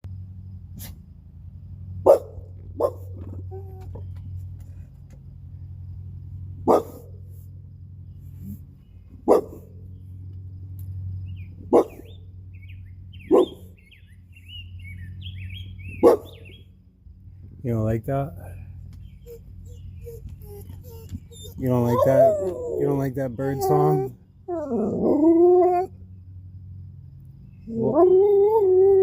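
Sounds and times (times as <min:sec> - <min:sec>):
steady low hum: 0:00.0 - 0:29.0
dog barking deeply: 0:02.0 - 0:03.5, 0:06.6 - 0:07.2, 0:09.2 - 0:09.7, 0:11.7 - 0:12.1, 0:13.2 - 0:13.7, 0:16.0 - 0:16.5
faint bird chirping: 0:11.0 - 0:24.6.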